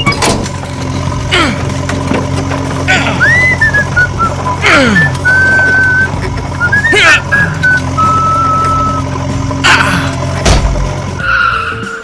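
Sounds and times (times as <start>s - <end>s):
small engine humming: 0.0s - 12.0s
high whistle-like tones: 3.2s - 9.1s.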